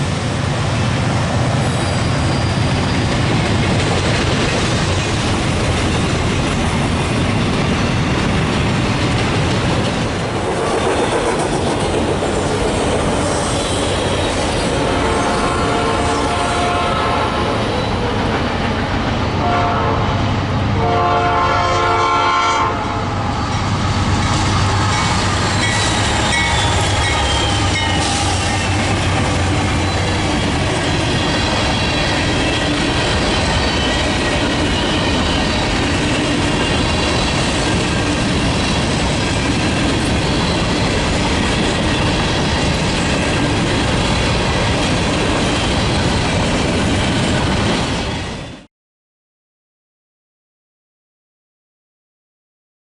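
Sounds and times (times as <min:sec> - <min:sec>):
freight train rolling past: 0:00.0 - 0:48.7
locomotive horn blasts: 0:14.8 - 0:17.6, 0:19.4 - 0:20.2, 0:20.8 - 0:23.1.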